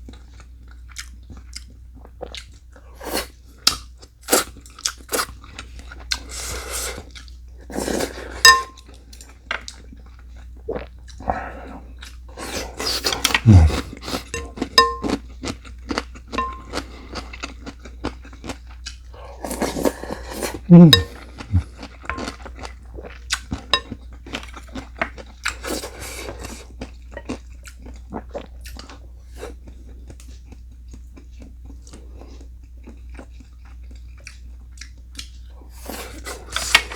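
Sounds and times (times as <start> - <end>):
cutlery clinking on dishes: 8.4 - 8.8, 14.3 - 15.2, 16.4 - 16.8, 20.8 - 21.2.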